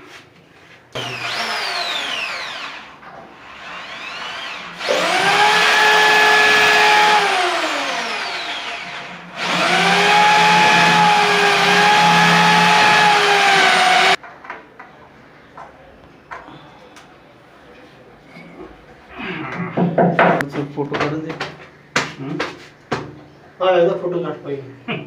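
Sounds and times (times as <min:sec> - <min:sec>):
power tool motor whining: 0:01.0 - 0:14.2.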